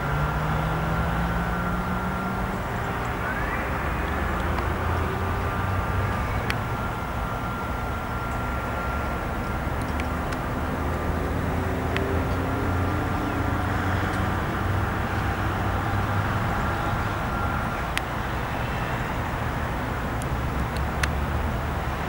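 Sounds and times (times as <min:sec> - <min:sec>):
distant light aircraft engine drone: 0:00.0 - 0:22.0.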